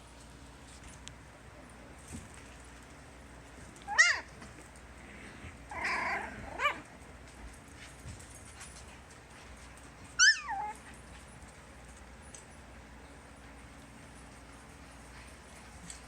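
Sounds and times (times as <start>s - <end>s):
puppies whining and yelping: 3.9s - 4.4s, 5.7s - 6.8s, 10.1s - 10.9s.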